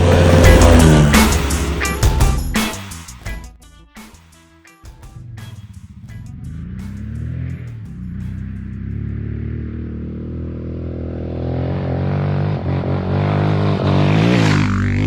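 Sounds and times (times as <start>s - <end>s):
motorcycle engine accelerating: 0.0s - 3.1s, 4.9s - 15.0s.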